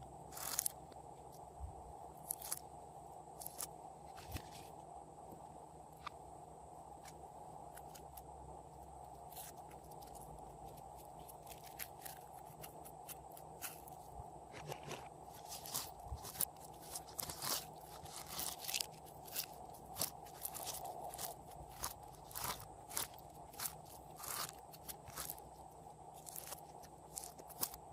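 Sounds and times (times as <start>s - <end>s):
steady background hum: 0.0s - 27.9s
slime clicking and crackling: 15.4s - 25.4s, 26.2s - 27.8s.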